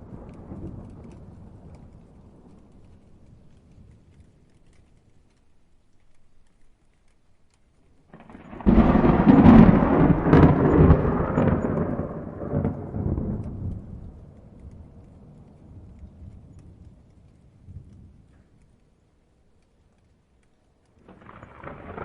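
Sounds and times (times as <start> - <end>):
thunder rumbling and cracking: 0.0 - 5.0, 8.1 - 18.6, 21.0 - 22.0.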